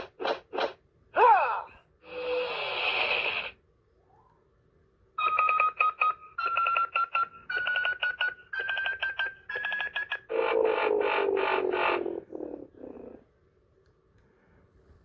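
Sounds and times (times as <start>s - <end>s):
toy electronic beeps: 5.2s - 12.1s
toy buzzing tone falling: 9.6s - 12.3s.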